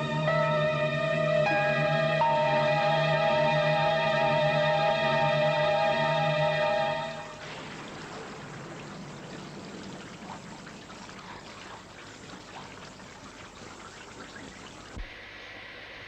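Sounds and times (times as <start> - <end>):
faint high whine: 0.0 - 9.8
falling water hiss: 0.0 - 16.0
water splashes and drips: 7.2 - 15.1.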